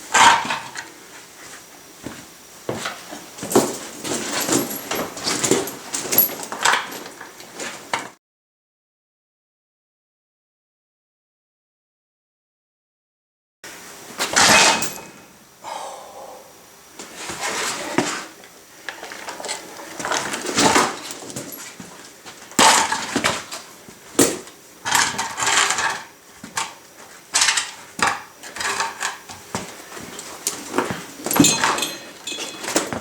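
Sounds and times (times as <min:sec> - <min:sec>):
metallic clanking and rattling: 0:30.2 - 0:33.0.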